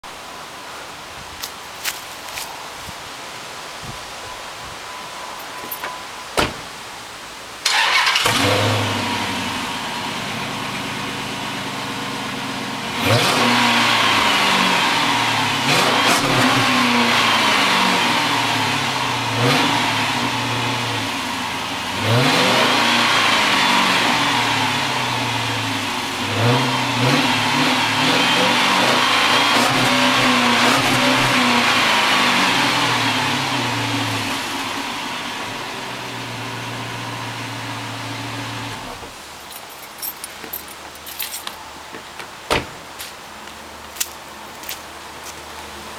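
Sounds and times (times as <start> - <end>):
car engine starting and idling: 7.6 - 41.5
car engine revving: 7.7 - 39.0.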